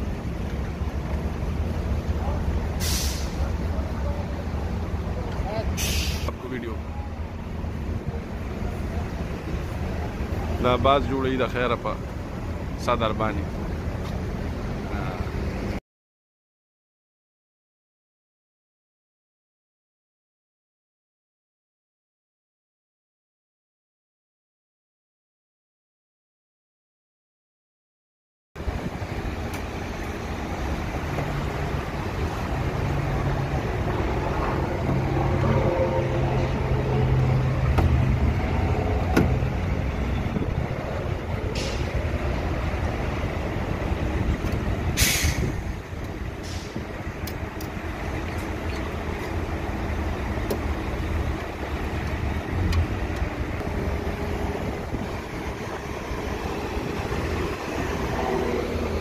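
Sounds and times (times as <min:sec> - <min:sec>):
air hiss: 0:02.8 - 0:03.5, 0:05.8 - 0:06.4, 0:45.0 - 0:45.7, 0:46.4 - 0:46.9.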